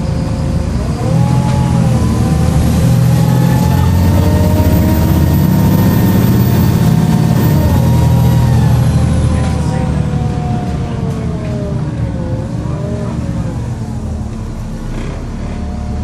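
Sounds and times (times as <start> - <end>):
bus engine running: 0.0 - 16.0
high-pitched turbocharger whistle: 0.8 - 9.1.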